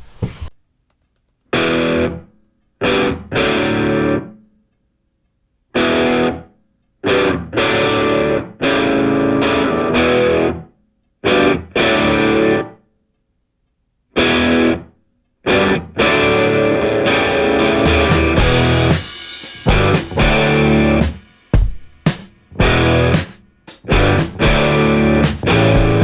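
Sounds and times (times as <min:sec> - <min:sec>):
distorted electric guitar stabs: 0:15.6 - 0:21.2, 0:22.6 - 0:26.0.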